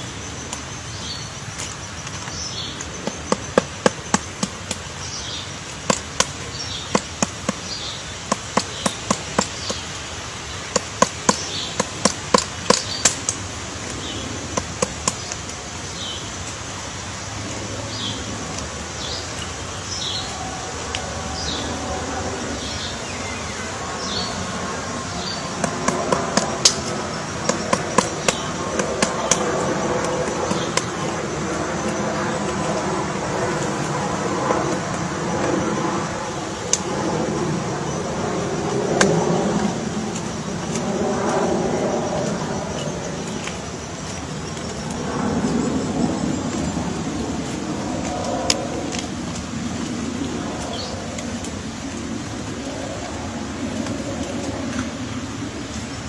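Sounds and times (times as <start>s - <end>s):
woodpecker pecking at wood: 2.2s - 13.4s, 25.1s - 32.7s.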